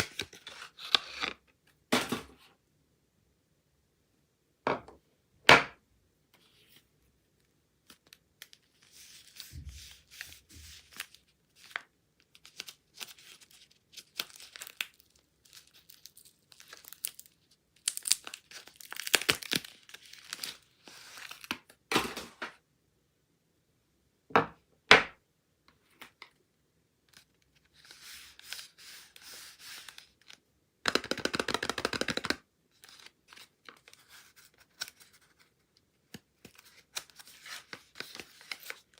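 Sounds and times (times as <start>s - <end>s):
wrapper tearing and crinkling: 12.4s - 21.5s.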